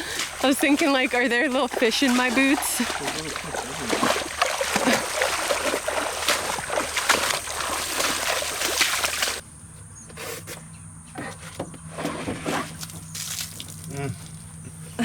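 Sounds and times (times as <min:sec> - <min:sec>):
footsteps splashing in water: 0:00.0 - 0:09.4, 0:12.5 - 0:14.4.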